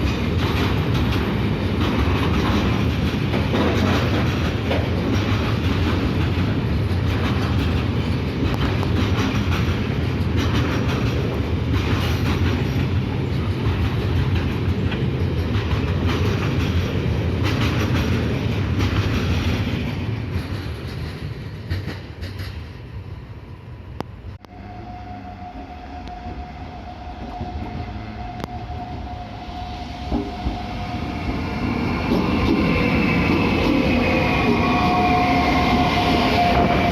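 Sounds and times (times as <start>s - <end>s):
freight train wagons clattering: 0.0s - 22.9s.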